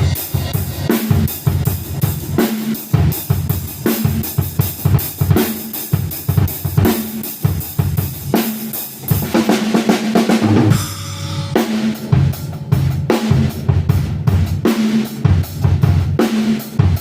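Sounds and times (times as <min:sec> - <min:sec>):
drum kit playing a groove: 0:00.0 - 0:17.0
low bass notes: 0:10.4 - 0:14.4.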